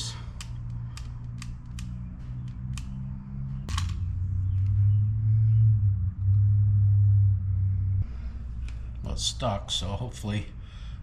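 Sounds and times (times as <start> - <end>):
sharp clicks: 0.2 - 4.8.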